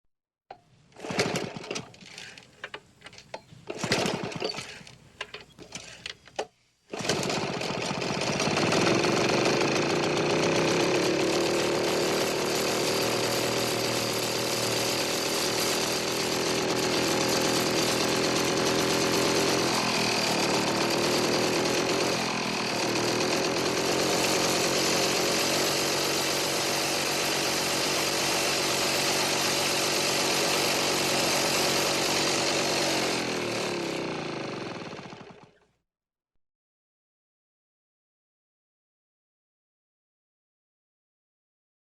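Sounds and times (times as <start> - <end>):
engine knocks and clatter: 7.0 - 35.5.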